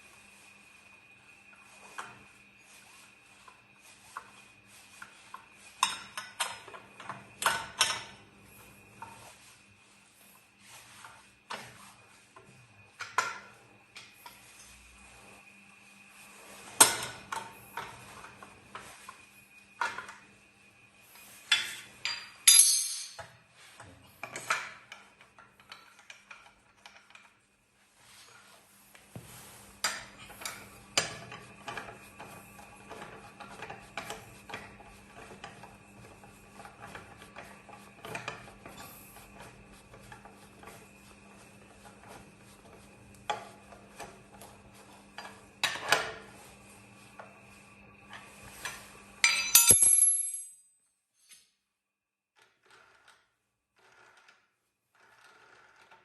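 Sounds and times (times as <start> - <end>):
metal parts clinking and knocking: 22.1 - 23.2, 49.2 - 50.6
ringing metallic clink: 22.5 - 23.2, 49.2 - 50.8.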